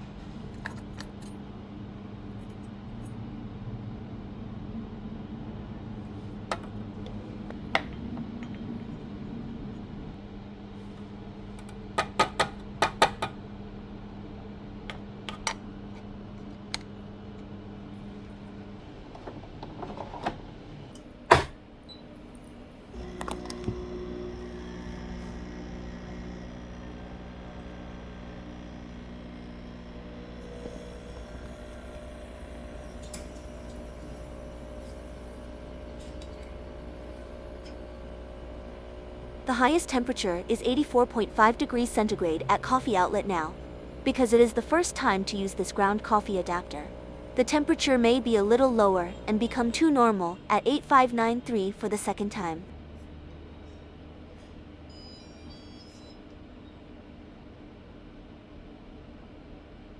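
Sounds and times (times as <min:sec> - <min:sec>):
coffee machine low hum: 0:00.0 - 0:12.0, 0:21.8 - 0:50.8
coffee machine pump running: 0:22.9 - 0:49.8.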